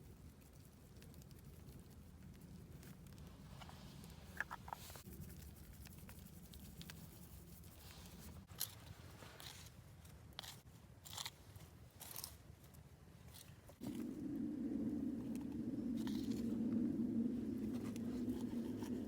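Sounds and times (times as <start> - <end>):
low steady hum: 13.7 - 19.0.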